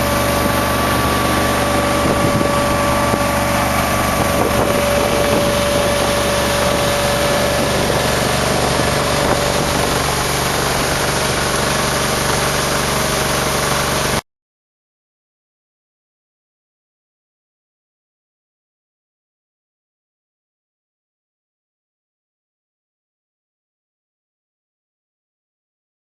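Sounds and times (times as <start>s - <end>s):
combine harvester drone: 0.0s - 14.2s
high machine whine: 0.0s - 14.2s.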